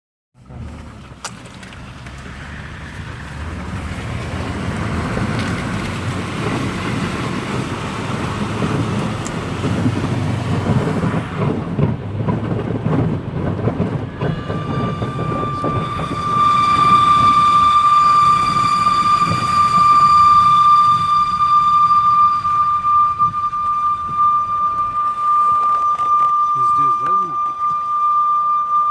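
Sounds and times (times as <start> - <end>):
car road and running noise: 0.4 - 16.7
steady high whistle: 14.1 - 28.9.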